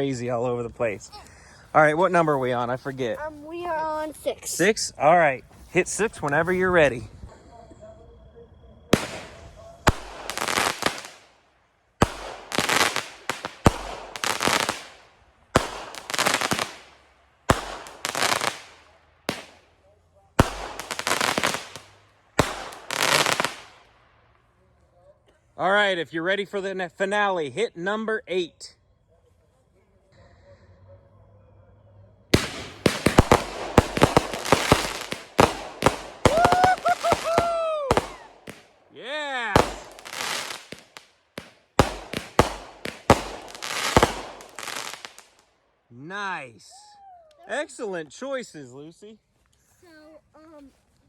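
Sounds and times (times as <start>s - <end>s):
crackling firework bursts: 8.9s - 19.8s, 20.4s - 24.0s, 32.3s - 45.5s
firework whistles: 32.4s - 38.7s.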